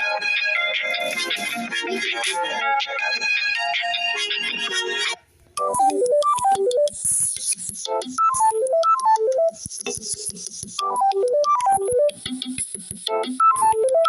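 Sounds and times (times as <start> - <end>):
synth ringtone melody: 0.4 - 7.0, 8.0 - 9.6, 10.8 - 12.2, 13.2 - 14.0
light electronic beat: 5.6 - 14.0.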